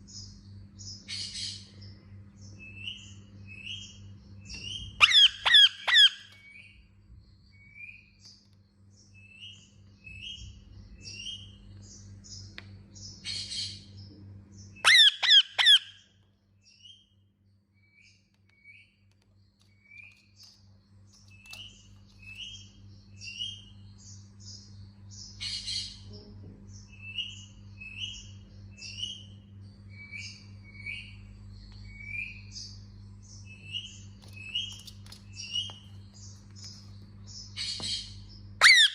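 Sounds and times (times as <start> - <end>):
parakeet chirping: 4.7 - 6.6, 14.8 - 16.0, 31.9 - 38.9
parakeet harsh screeches: 38.6 - 38.9.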